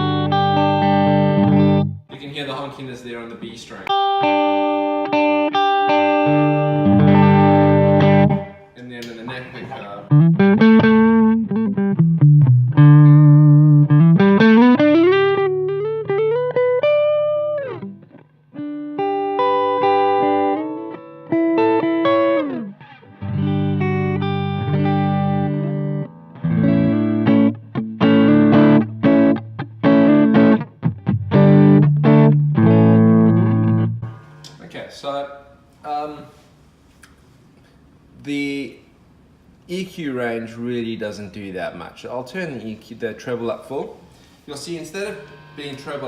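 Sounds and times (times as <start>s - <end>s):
electric guitar through valve amp: 0.0s - 2.0s, 3.9s - 8.6s, 10.1s - 34.6s, 44.2s - 46.0s.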